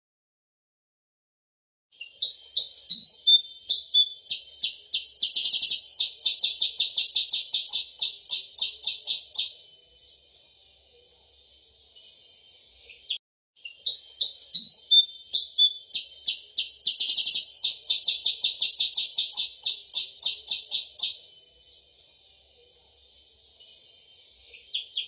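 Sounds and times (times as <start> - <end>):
bird chirping: 1.9 - 25.0
steady high hiss: 15.9 - 25.0.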